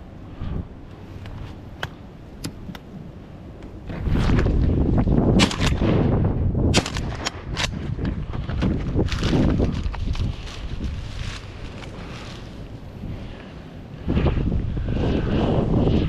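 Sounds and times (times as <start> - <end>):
wind buffeting microphone: 0.0 - 16.0
shotgun shots: 5.4 - 6.1.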